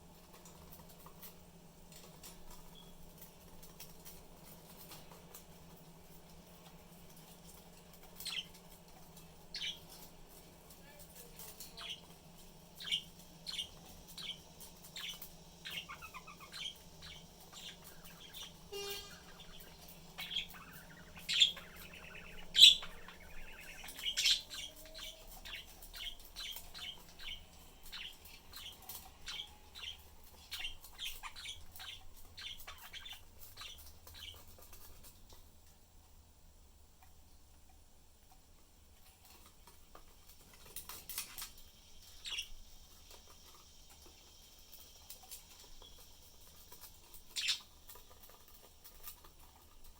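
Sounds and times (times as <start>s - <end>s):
budgerigars chirping: 7.9s - 10.1s, 11.4s - 35.0s, 40.8s - 42.8s, 45.0s - 49.2s
louder bird calls: 15.0s - 34.3s.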